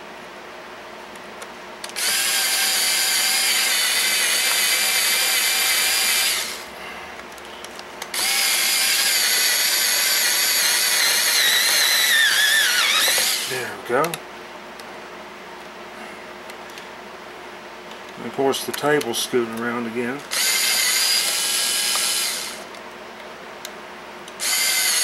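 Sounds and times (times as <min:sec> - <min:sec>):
electric screwdriver whining: 0:01.9 - 0:06.7, 0:08.1 - 0:13.6, 0:20.3 - 0:22.7, 0:24.4 - 0:25.0.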